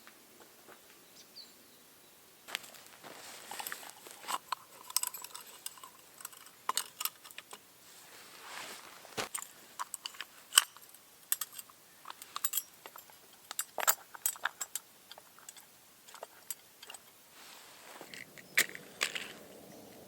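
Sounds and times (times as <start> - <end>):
sharp clicks and light clinks: 3.6 - 7.6, 9.3 - 17.2.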